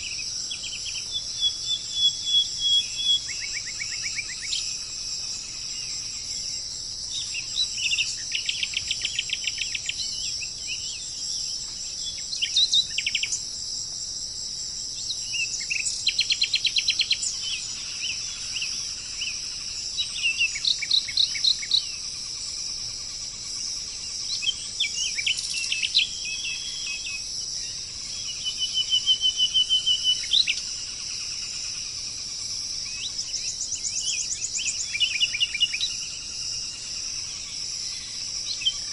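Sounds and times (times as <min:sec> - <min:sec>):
birds calling repeated notes: 0:00.0 - 0:04.7
high-pitched insect drone: 0:00.0 - 0:38.9.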